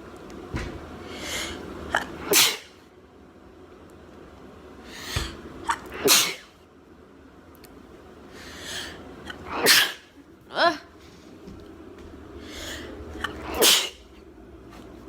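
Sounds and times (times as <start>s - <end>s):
person sneezing: 1.9s - 2.8s, 5.7s - 6.6s, 9.3s - 10.2s, 13.3s - 14.0s.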